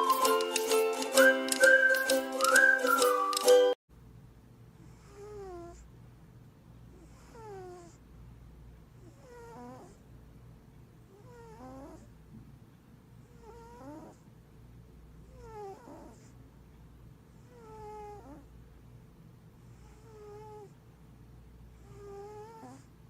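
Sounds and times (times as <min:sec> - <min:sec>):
cat snoring: 0:04.8 - 0:05.9, 0:06.9 - 0:08.0, 0:09.0 - 0:10.0, 0:11.1 - 0:12.1, 0:13.2 - 0:14.2, 0:15.2 - 0:16.4, 0:17.3 - 0:18.5, 0:19.6 - 0:20.8, 0:21.7 - 0:23.0.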